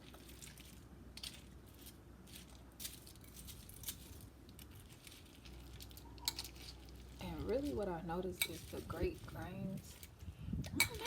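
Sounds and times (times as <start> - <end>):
cereal crunching: 0.0 - 10.2.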